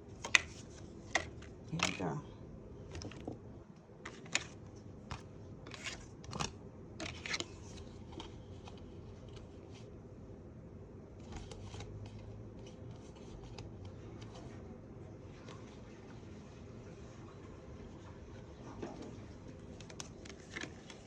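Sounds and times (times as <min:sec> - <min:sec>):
cards being shuffled: 0:00.1 - 0:02.1, 0:04.0 - 0:09.9, 0:11.2 - 0:14.5, 0:19.7 - 0:21.0.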